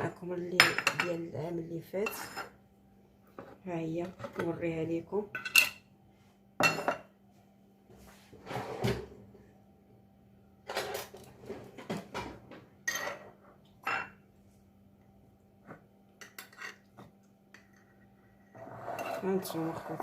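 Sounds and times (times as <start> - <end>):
kitchen containers knocking and clinking: 0.0 - 1.4, 6.6 - 7.1.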